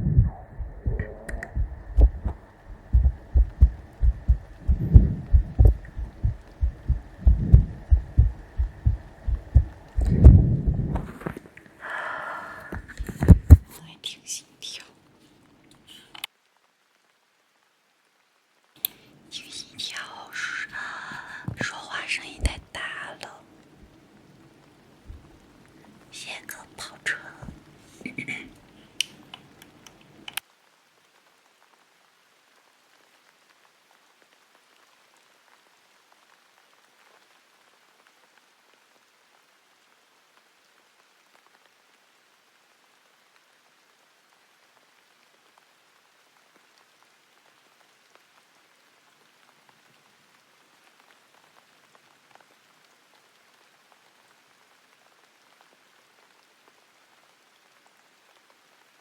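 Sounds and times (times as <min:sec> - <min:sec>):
faint steady hiss: 0:00.0 - 0:59.0
sharp clicks: 0:00.2 - 0:11.4
soft ticks: 0:00.2 - 0:11.7.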